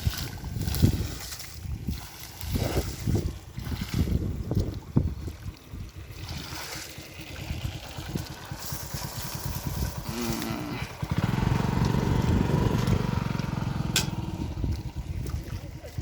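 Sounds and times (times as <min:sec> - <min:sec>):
small engine chugging: 0:06.8 - 0:15.0
short low pitched call: 0:10.1 - 0:10.9.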